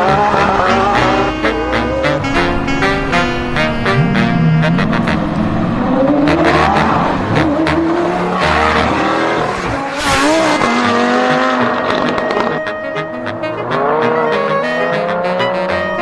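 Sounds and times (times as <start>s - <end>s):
background music: 0.0s - 9.2s
sliding tones: 0.0s - 16.0s.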